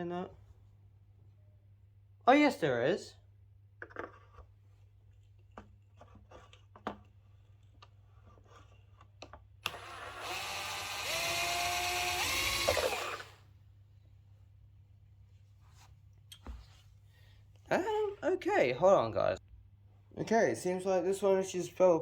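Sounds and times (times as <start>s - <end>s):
cordless drill driving screw: 9.6s - 13.4s.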